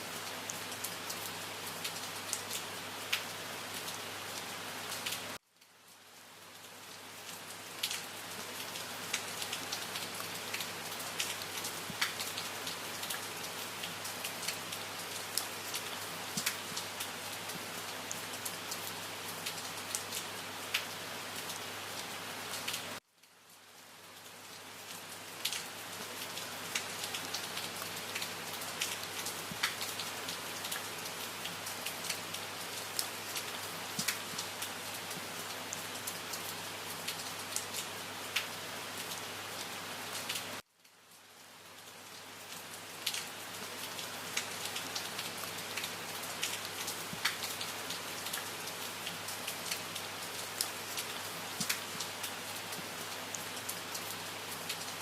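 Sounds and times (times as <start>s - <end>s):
steady rain on a surface: 0.0s - 55.0s.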